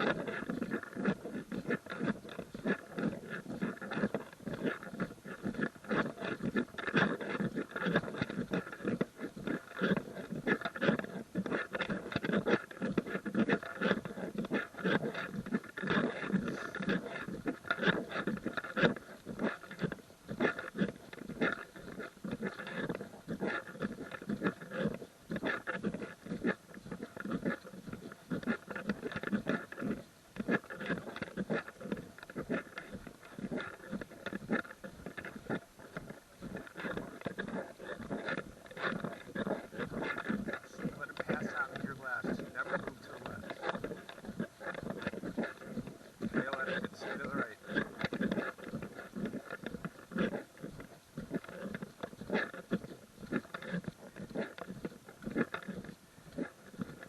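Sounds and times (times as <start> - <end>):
footsteps crunching on gravel: 7.3 - 55.7.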